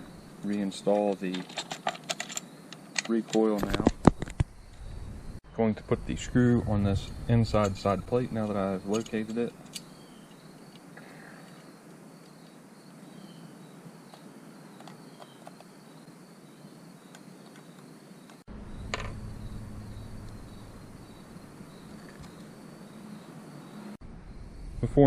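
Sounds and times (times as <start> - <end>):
crickets chirping: 0.0 - 25.0
small parts clicking: 1.2 - 3.9
low hum: 4.3 - 10.2, 18.5 - 23.0.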